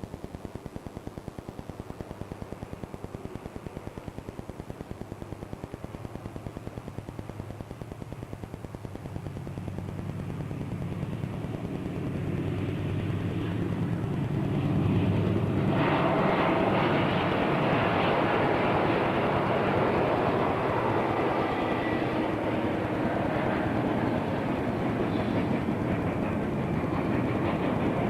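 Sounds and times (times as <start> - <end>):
diesel locomotives rumbling: 9.6 - 28.0.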